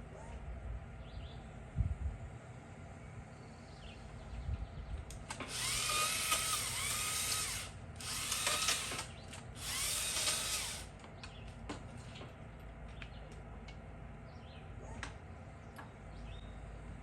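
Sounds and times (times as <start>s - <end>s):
chainsaw cutting wood: 5.4s - 10.9s.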